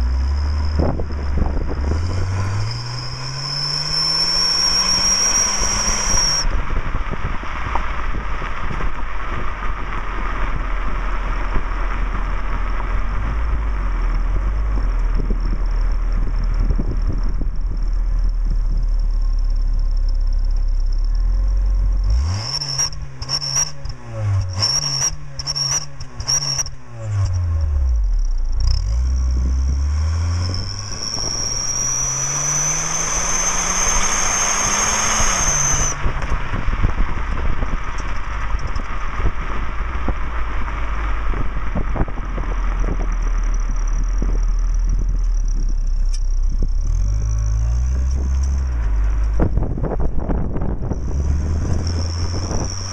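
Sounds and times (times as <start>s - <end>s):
exhaust whistle: 0.0s - 6.6s, 28.6s - 36.5s, 50.3s - 52.9s
car engine accelerating: 0.0s - 52.9s.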